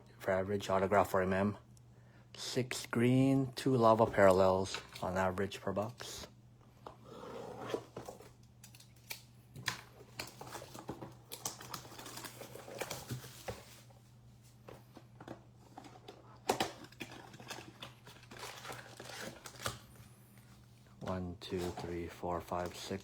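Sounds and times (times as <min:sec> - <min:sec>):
card packs clicking and rustling: 0:07.7 - 0:13.9, 0:15.0 - 0:20.0, 0:21.0 - 0:23.0.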